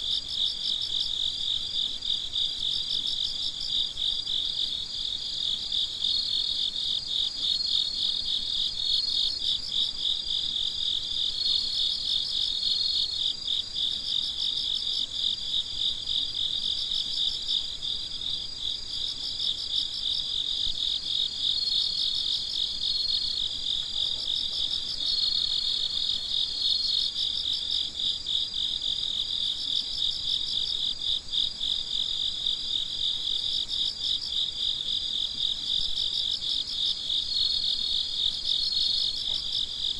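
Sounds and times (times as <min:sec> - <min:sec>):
crickets chirping: 0:00.0 - 0:39.9
high steady insect trill: 0:00.0 - 0:39.9.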